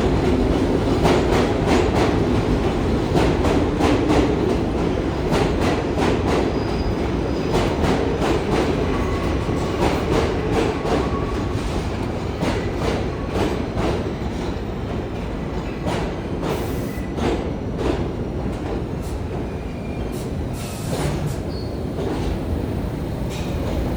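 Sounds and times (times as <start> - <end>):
faint wheel squeal: 19.7 - 21.8.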